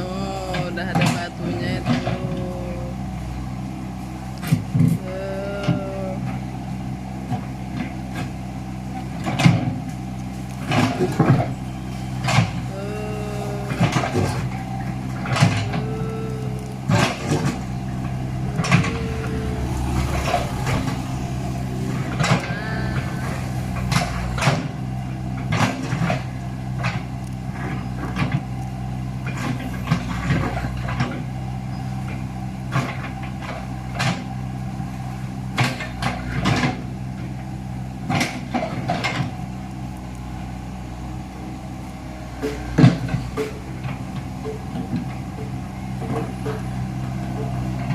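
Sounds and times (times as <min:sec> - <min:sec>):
excavator diesel engine running: 0:00.0 - 0:47.9
bucket knocking and scraping road: 0:42.4 - 0:47.9.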